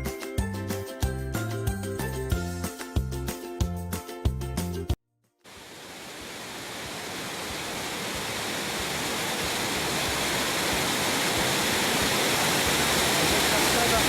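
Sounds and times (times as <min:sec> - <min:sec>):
waterfall rushing: 0:05.5 - 0:14.0.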